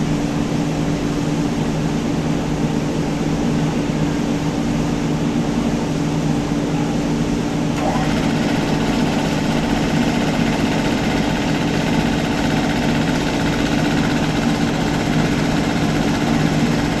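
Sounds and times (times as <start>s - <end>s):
machine spindle whirring: 7.8s - 17.0s.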